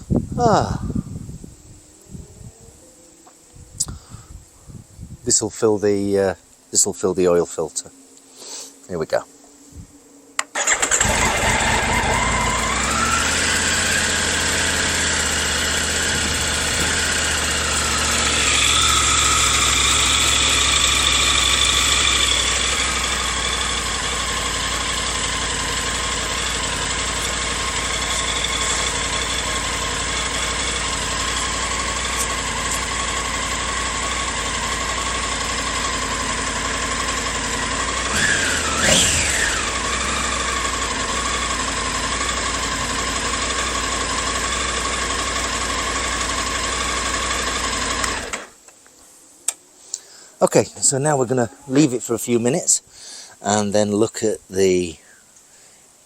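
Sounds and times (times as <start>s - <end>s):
motorcycle engine idling: 10.6s - 48.6s.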